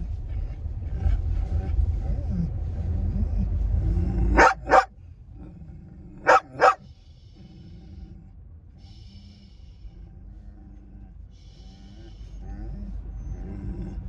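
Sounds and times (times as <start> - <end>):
low rumble: 0.0 - 14.0
dog barking: 4.4 - 4.9, 6.2 - 6.9.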